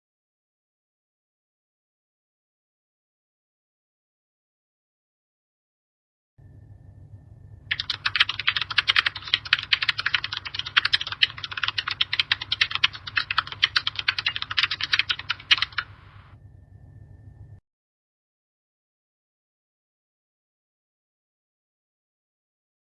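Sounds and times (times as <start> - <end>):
faint low hum: 6.4 - 17.6
keyboard typing: 7.7 - 16.4.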